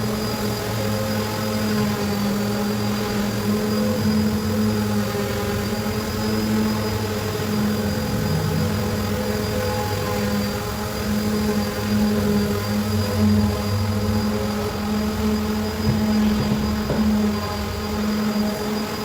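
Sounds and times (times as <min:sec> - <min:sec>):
electric sander running: 0:11.8 - 0:18.9.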